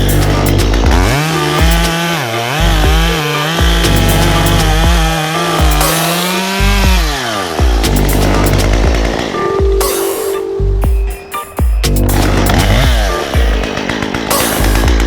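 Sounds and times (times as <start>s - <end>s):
chainsaw cutting wood: 0.0s - 10.2s, 11.9s - 15.0s
music with heavy bass beat: 0.0s - 15.0s.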